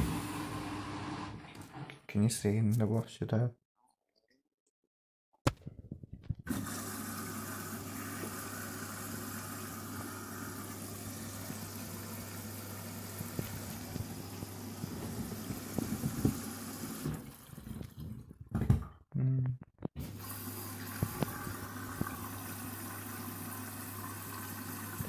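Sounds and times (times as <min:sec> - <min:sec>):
water hissing through inlet valve: 0:00.0 - 0:01.2
valve humming: 0:00.0 - 0:01.4.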